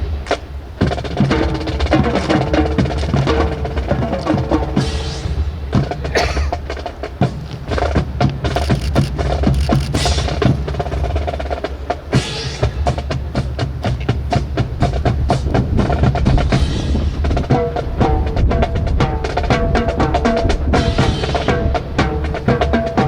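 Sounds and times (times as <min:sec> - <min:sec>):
snare and bass drum cadence: 0:00.0 - 0:23.0
sharp wooden clacks: 0:07.8 - 0:10.6.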